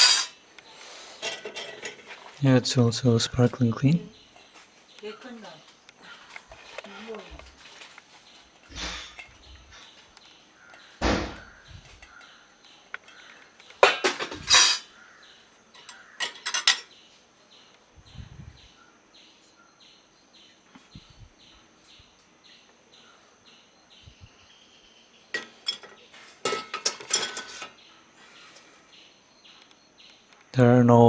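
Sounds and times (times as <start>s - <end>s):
dishes and cutlery clinking: 0.0s - 0.4s, 1.2s - 2.4s, 8.6s - 10.0s, 13.8s - 14.9s, 15.8s - 16.9s, 25.3s - 27.8s.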